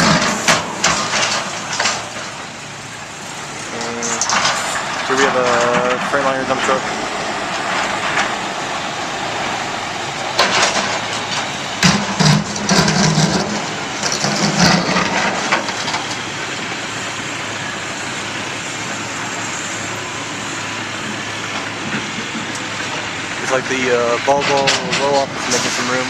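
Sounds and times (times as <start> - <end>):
knocks and clatter: 0.0 - 2.5, 3.6 - 8.6, 9.4 - 16.8
diesel heavy equipment running: 0.0 - 26.0.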